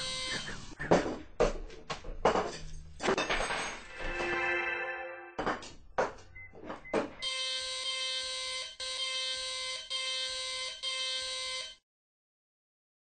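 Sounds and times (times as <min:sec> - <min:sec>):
electric alarm buzzer: 0:00.0 - 0:00.6, 0:07.2 - 0:11.8.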